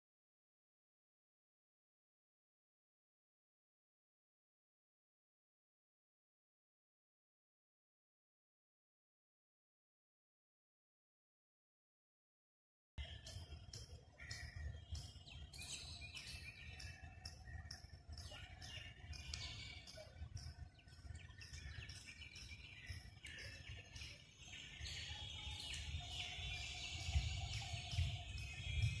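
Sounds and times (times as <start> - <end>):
birds chirping: 13.0 - 29.0.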